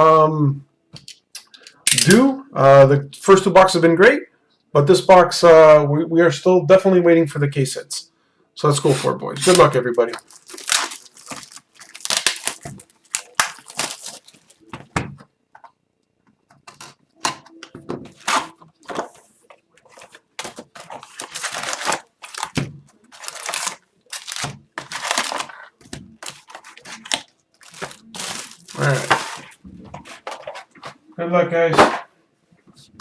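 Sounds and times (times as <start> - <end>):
packaging tearing and crinkling: 9.4 - 14.7, 20.1 - 30.5.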